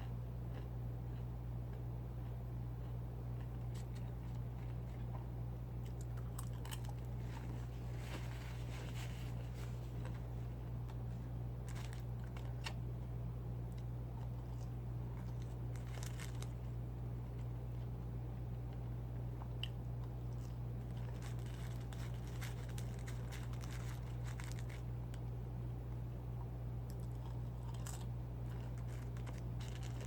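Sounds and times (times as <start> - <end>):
low electrical hum: 0.0 - 30.0
food crunching: 0.5 - 25.4, 26.8 - 30.0
paper crinkling: 6.0 - 12.8, 14.2 - 16.7, 20.4 - 24.9, 27.2 - 30.0.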